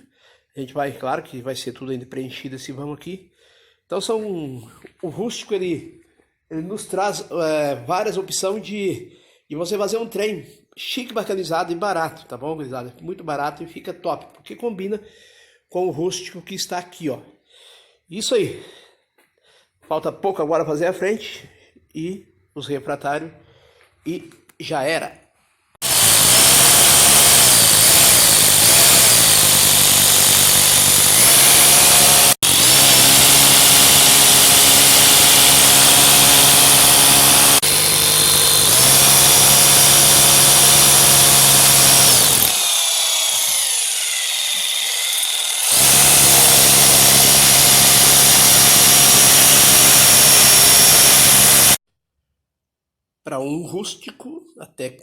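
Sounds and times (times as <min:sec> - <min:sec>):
power tool whining: 0:25.8 - 0:51.8.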